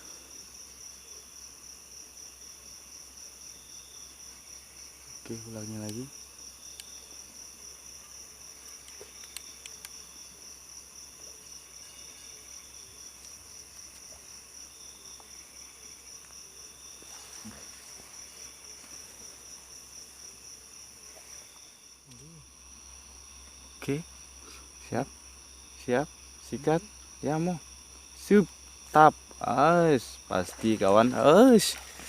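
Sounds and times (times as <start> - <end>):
crickets trilling: 0.0 - 32.0
faint clicks: 8.8 - 10.0.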